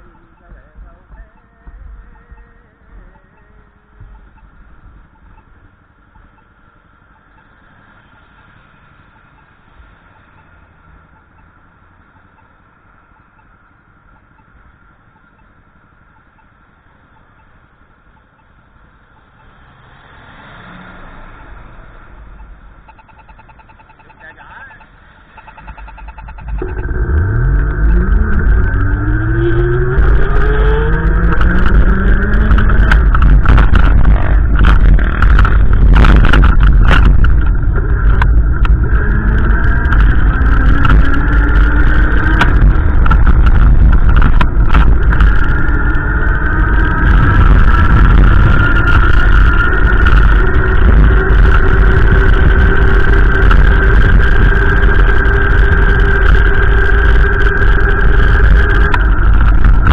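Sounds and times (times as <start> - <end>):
heavy low rumble: 0.0 - 7.4, 21.0 - 59.9
vehicle engine accelerating: 19.0 - 59.9.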